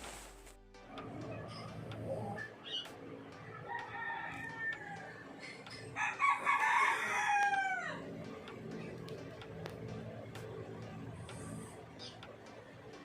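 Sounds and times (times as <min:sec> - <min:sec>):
rooster crowing: 0:03.5 - 0:08.1.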